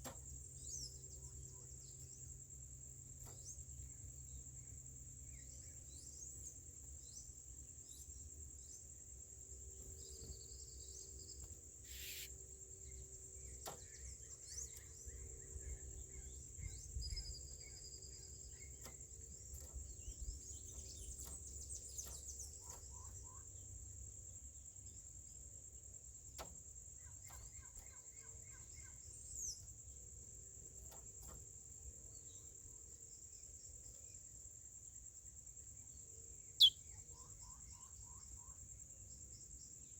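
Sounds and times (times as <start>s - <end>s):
insect drone: 0.0s - 39.9s
bird chirps and calls: 11.8s - 12.3s, 36.6s - 36.9s.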